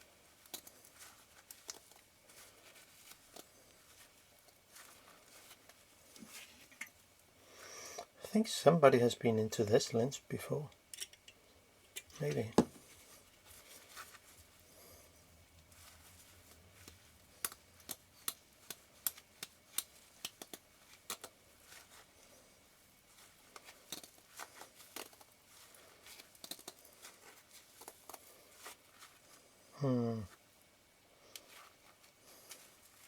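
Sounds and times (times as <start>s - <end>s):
small metal parts clicking: 10.9s - 11.4s, 26.4s - 26.8s.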